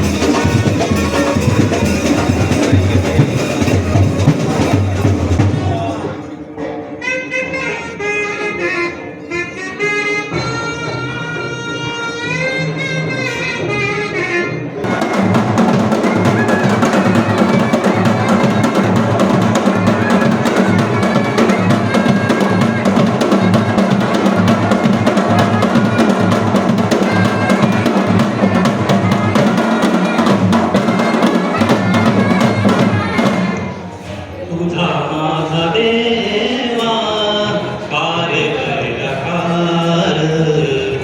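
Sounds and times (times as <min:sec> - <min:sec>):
shehnai melody: 0:00.0 - 0:05.0, 0:06.9 - 0:34.0
kettledrum roll: 0:00.0 - 0:06.0, 0:14.9 - 0:33.6.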